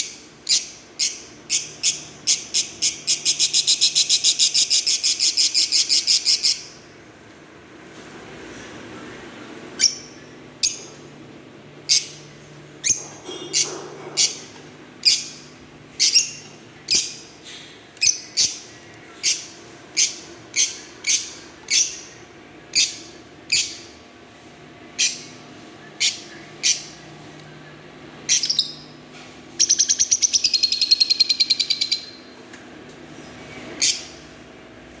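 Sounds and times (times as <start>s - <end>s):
bird chattering trill: 25.0s - 25.4s, 26.0s - 27.0s, 29.6s - 32.2s
bird chirps: 28.3s - 29.0s, 29.6s - 32.3s.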